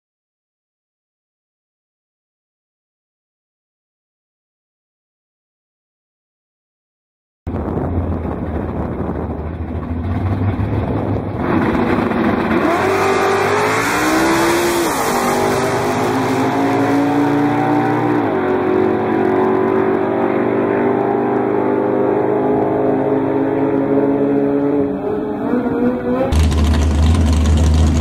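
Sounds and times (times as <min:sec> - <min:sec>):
drag racing engines revving: 0:07.6 - 0:28.0.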